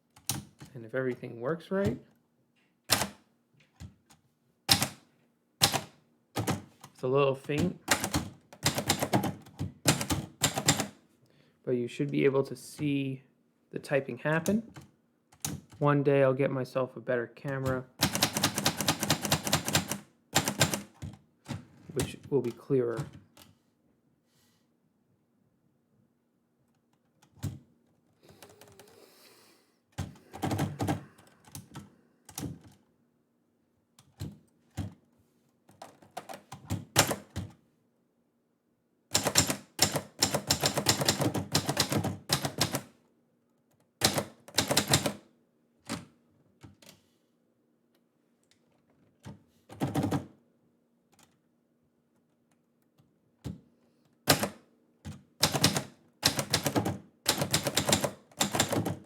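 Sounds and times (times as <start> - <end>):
typewriter keystrokes: 2.9 - 3.2, 4.7 - 5.0, 5.6 - 6.6, 7.6 - 10.9, 17.6 - 21.0, 36.0 - 37.5, 39.1 - 42.9, 44.0 - 45.2, 54.3 - 59.0.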